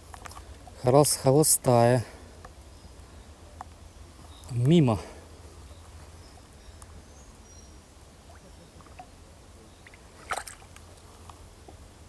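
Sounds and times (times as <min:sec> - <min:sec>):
faint water sounds: 0:00.0 - 0:12.0
sharp water splash: 0:09.9 - 0:10.8.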